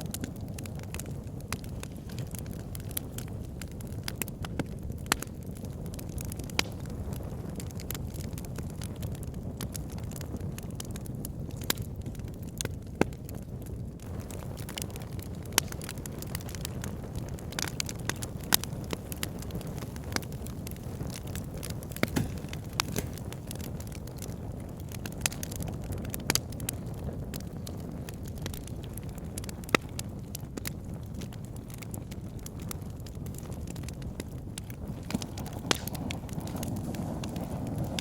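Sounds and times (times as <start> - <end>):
low rumble of flame: 0.0 - 38.0
wood fire crackling: 0.0 - 38.0
logs popping and snapping: 0.2 - 5.4, 17.4 - 24.4, 34.6 - 38.0.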